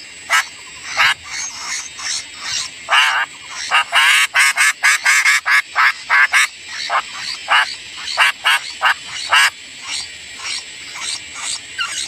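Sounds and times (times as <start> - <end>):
faint high bird chirps: 6.1 - 12.0.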